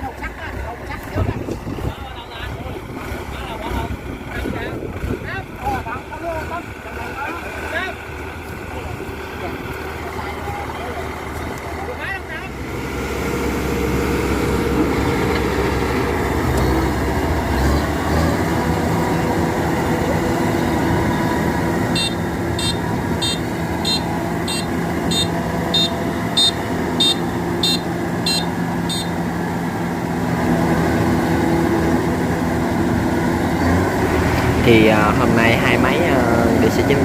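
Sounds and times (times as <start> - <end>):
combine harvester running: 0.0 - 37.0
high electronic warning beeps: 22.0 - 29.1.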